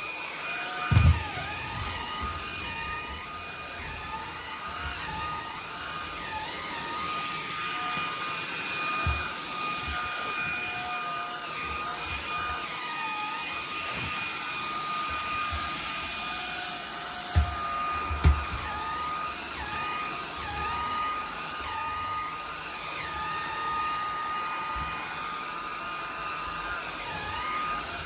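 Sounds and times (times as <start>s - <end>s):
vacuum cleaner running: 0.0s - 28.0s.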